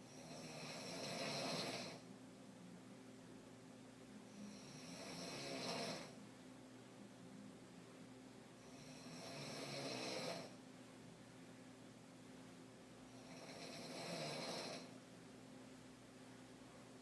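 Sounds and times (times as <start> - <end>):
woman snoring: 0.1 - 2.0, 4.3 - 6.2, 8.6 - 10.6, 13.1 - 15.0.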